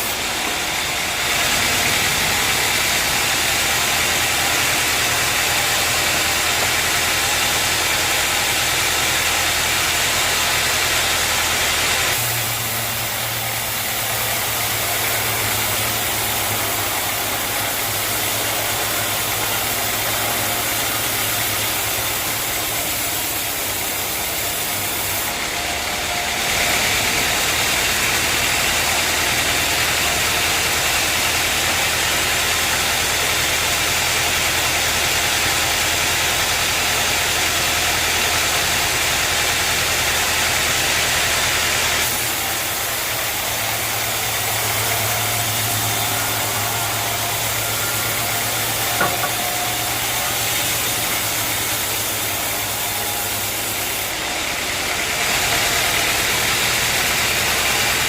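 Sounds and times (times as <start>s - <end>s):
sawmill machinery running: 0.0s - 58.0s
bright hiss: 29.8s - 54.2s.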